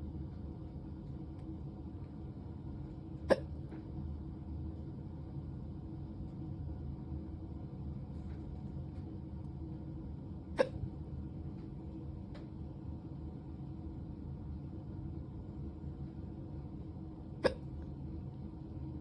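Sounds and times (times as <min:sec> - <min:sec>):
steady low hum: 0:00.0 - 0:19.0
person hiccuping: 0:10.6 - 0:10.8, 0:17.4 - 0:17.7.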